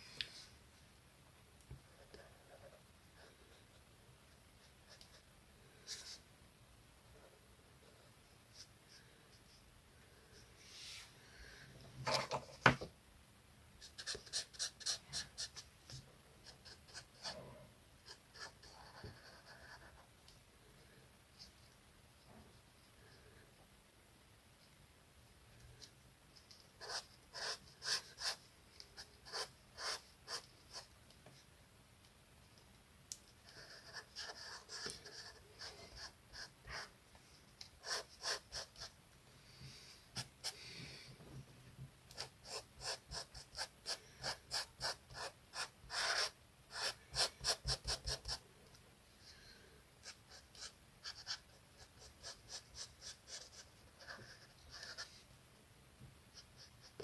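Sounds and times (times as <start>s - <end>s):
person breathing: 8.8s - 11.9s, 39.3s - 41.2s, 49.1s - 49.9s
crayon scratching on paper: 13.8s - 15.7s, 26.8s - 28.4s, 29.0s - 30.9s, 37.8s - 38.9s, 42.1s - 48.4s, 50.0s - 55.1s.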